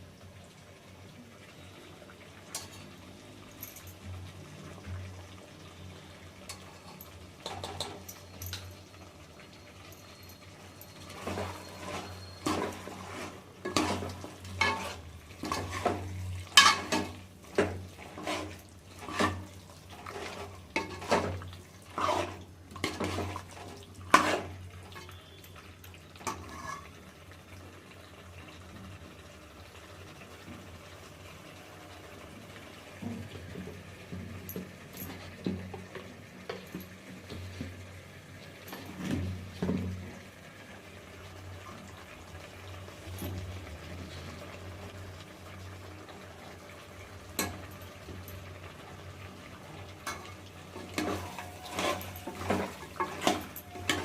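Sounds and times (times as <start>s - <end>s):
utensils clattering: 2.5s - 3.0s, 6.5s - 8.9s, 9.8s - 25.6s, 34.5s - 37.4s, 50.0s - 54.0s.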